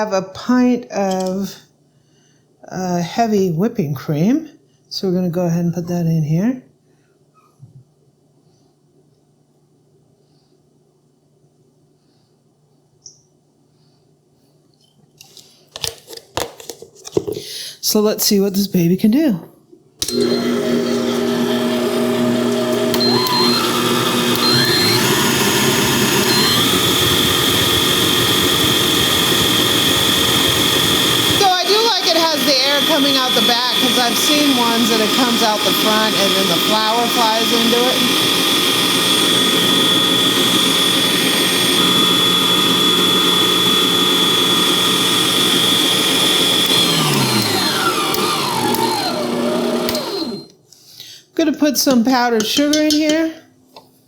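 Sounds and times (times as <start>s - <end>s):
stand mixer motor whine: 20.0s - 50.5s
whisk beating cream: 20.3s - 50.4s.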